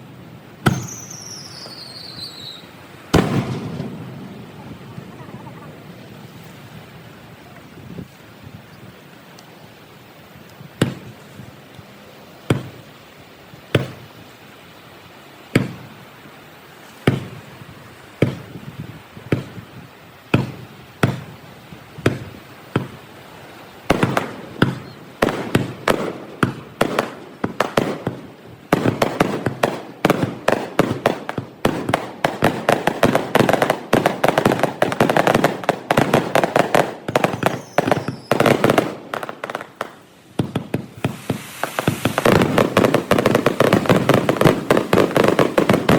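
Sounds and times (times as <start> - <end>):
fireworks banging: 0.6 - 5.7, 10.8 - 11.2, 12.5 - 12.9, 13.7 - 14.1, 15.5 - 15.9, 17.0 - 17.5, 18.2 - 18.6, 19.2 - 19.7, 20.3 - 21.4, 22.0 - 23.1, 23.8 - 45.9.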